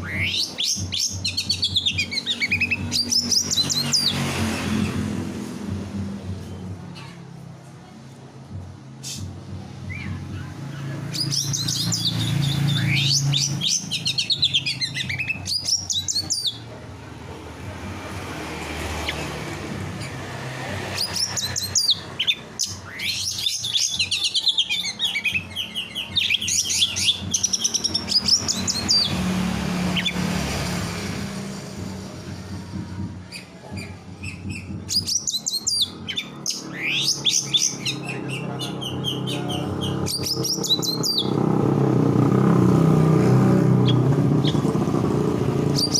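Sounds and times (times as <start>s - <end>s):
songbird trilling and warbling: 0.0s - 4.2s, 9.8s - 16.7s, 20.9s - 30.3s, 33.4s - 41.5s, 43.6s - 44.9s, 45.6s - 45.9s.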